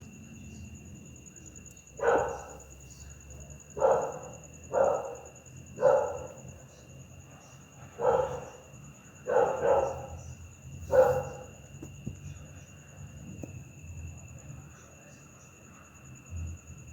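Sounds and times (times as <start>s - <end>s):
night insects trilling: 0.0s - 16.9s
dog barking: 2.0s - 2.7s, 3.7s - 6.6s, 7.2s - 10.3s, 10.9s - 11.6s.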